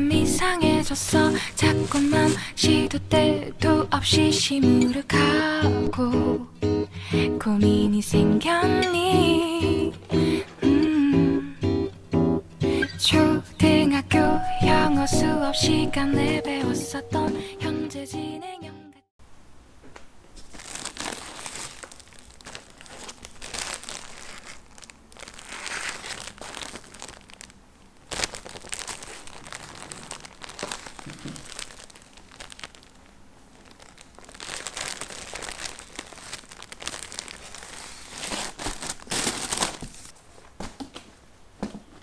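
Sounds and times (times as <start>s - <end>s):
bag rustling and crinkling: 0.2s - 3.0s, 20.3s - 40.8s.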